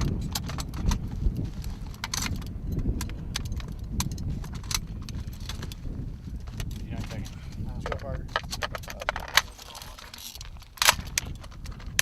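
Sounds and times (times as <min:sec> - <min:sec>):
steady low rumble: 0:00.0 - 0:12.0
metal gun parts clicking: 0:01.8 - 0:05.7, 0:07.8 - 0:12.0.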